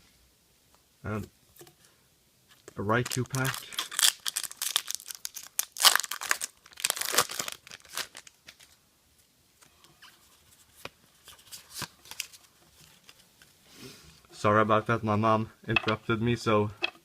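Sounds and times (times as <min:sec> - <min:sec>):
foil wrapper tearing and crinkling: 0:03.0 - 0:08.8.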